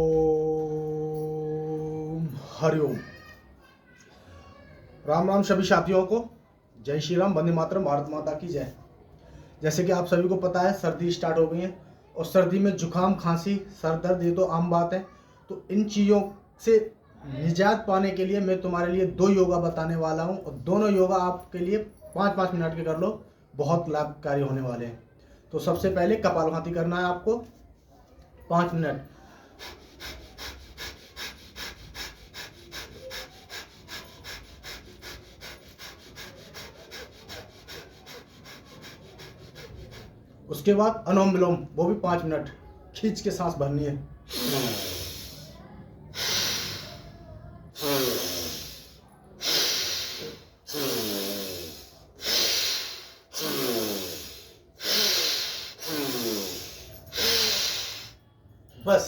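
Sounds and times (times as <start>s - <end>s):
person breathing through nose: 29.2s - 40.2s, 44.3s - 58.2s
man's forceful nasal exhalations: 44.3s - 47.1s, 47.8s - 58.2s.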